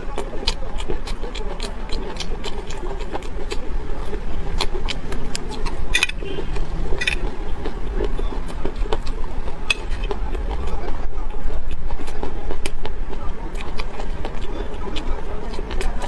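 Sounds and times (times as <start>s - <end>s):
mouth clicks: 0.0s - 10.5s
chewing crunches: 0.0s - 10.9s, 11.9s - 16.0s.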